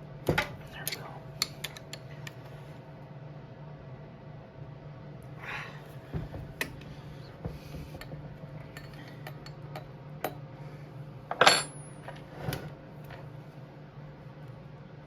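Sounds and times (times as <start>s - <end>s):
steady low hum: 0.0s - 15.0s
metal tools clinking: 11.3s - 12.0s
metallic ring: 11.4s - 12.1s.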